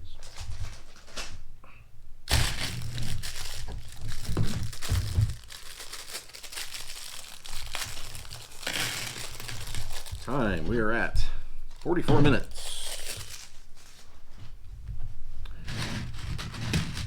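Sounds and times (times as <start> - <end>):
plastic bag crinkling: 2.3 - 14.1.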